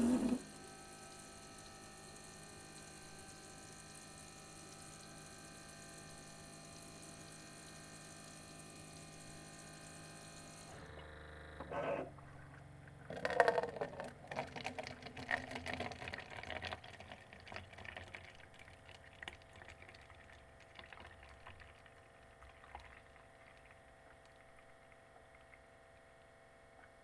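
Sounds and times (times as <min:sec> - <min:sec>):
coffee maker sputtering and gurgling: 0:00.0 - 0:27.0
faint water drips: 0:14.7 - 0:27.0.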